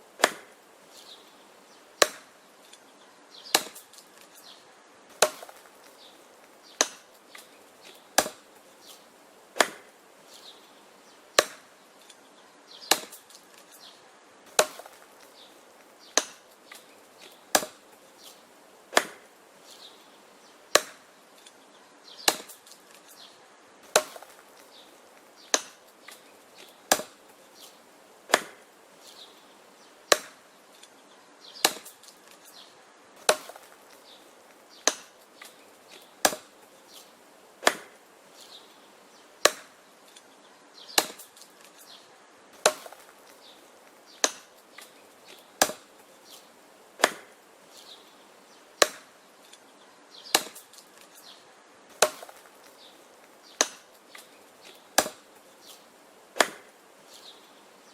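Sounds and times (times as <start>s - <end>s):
axe chopping wood: 0.2s - 0.6s, 2.0s - 2.4s, 3.5s - 4.3s, 5.1s - 6.0s, 6.7s - 9.0s, 9.6s - 10.0s, 11.4s - 11.8s, 12.8s - 13.7s, 14.5s - 17.9s, 18.9s - 19.3s, 20.7s - 21.1s, 22.2s - 23.2s, 23.8s - 28.7s, 30.1s - 30.5s, 31.6s - 32.6s, 33.2s - 38.0s, 39.4s - 40.2s, 40.9s - 41.8s, 42.6s - 46.0s, 47.0s - 47.4s, 48.8s - 49.1s, 50.3s - 51.1s, 51.9s - 52.8s, 53.5s - 55.8s, 56.4s - 56.8s
faint wood cracks: 3.5s - 10.6s, 12.8s - 20.0s, 22.2s - 29.3s, 31.6s - 38.8s, 39.4s - 42.0s, 42.6s - 48.1s, 48.8s - 49.7s, 50.3s - 57.4s.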